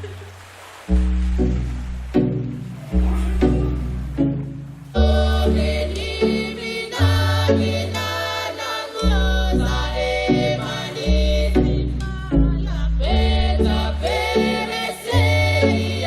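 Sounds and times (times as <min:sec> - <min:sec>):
deep held bass notes: 0:00.9 - 0:06.0
choir-like singing: 0:02.9 - 0:16.0.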